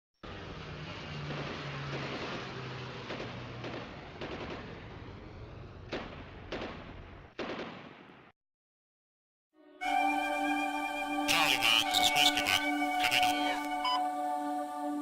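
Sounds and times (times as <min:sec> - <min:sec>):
gunshots: 0:01.2 - 0:05.0, 0:05.8 - 0:08.3.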